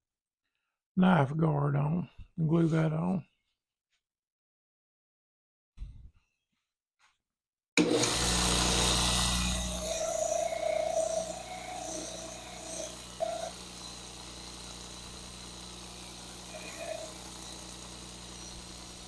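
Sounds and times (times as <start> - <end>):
power tool motor humming: 7.8 - 19.0.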